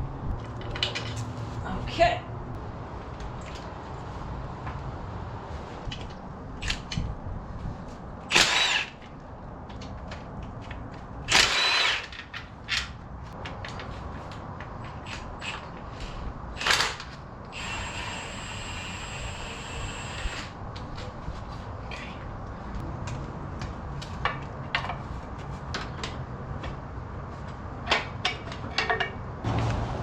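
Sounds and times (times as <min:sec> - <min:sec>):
handheld power tool running: 0:08.3 - 0:09.0, 0:11.3 - 0:12.1, 0:17.5 - 0:20.5.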